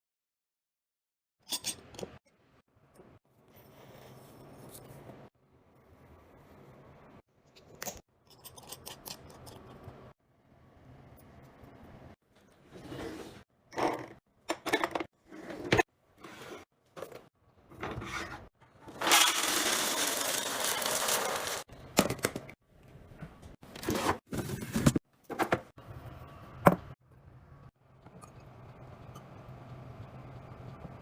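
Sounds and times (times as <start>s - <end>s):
packaging rubbing and rustling: 19.0s - 21.6s.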